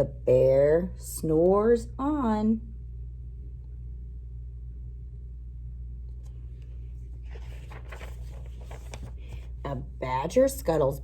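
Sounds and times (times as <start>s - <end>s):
low electrical hum: 0.0s - 11.0s
book page turning: 6.2s - 9.6s.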